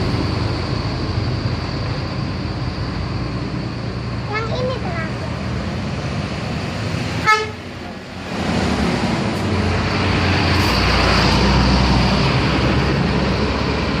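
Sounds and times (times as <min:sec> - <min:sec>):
bus engine passing: 0:00.0 - 0:14.0
bus horn toot: 0:07.2 - 0:07.7.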